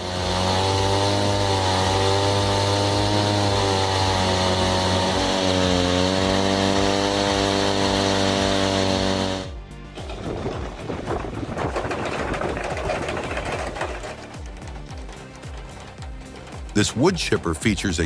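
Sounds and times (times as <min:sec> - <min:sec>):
chainsaw engine at high revs: 0:00.0 - 0:09.6
mechanical clattering: 0:09.8 - 0:18.0.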